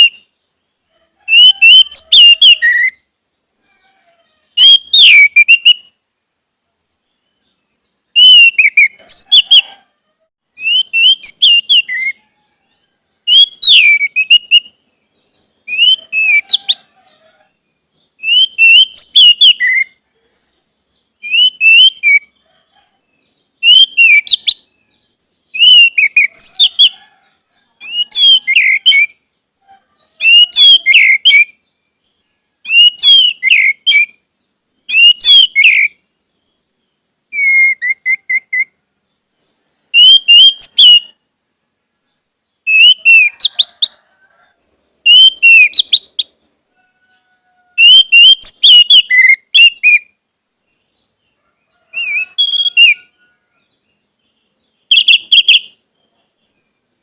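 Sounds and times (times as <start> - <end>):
bird singing whistled phrases: 1.3 - 3.0, 4.6 - 5.9, 8.2 - 9.7, 10.6 - 12.2, 13.3 - 14.7, 15.7 - 16.8, 18.2 - 20.0, 21.2 - 22.3, 23.6 - 24.7, 25.6 - 26.9, 27.8 - 29.2, 30.2 - 31.6, 32.7 - 34.2, 34.9 - 36.0, 37.3 - 38.7, 40.0 - 41.2, 42.7 - 43.8, 45.1 - 46.3, 47.8 - 50.1, 52.0 - 53.1, 54.9 - 55.8.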